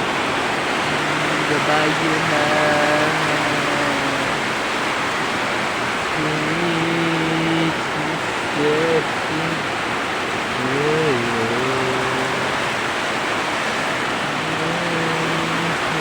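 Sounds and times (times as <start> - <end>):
heavy rain pouring: 0.0 - 16.0
low wavering voice-like sound: 0.9 - 4.4, 6.2 - 9.7, 10.6 - 12.7, 14.2 - 16.0.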